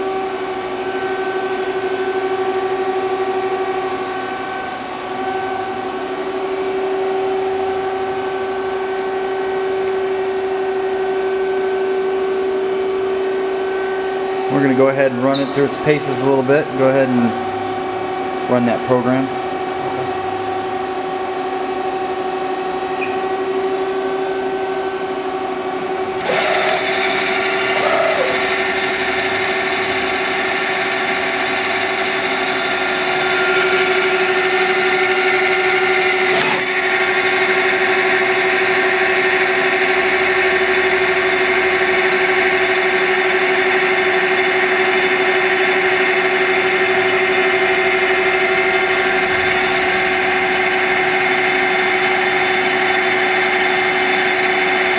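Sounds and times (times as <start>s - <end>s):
lathe machine whine: 0.0s - 54.9s.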